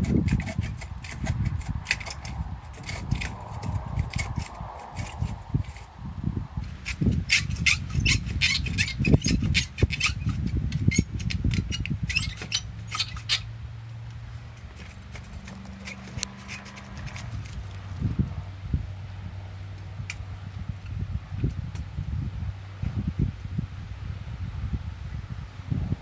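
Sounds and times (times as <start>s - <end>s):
handsaw cutting wood: 0.0s - 5.9s, 6.7s - 13.5s, 14.4s - 17.9s.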